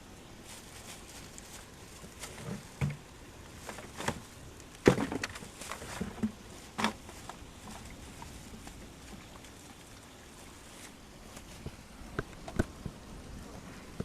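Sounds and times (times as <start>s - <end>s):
hard objects knocking and clunking: 2.4s - 3.0s.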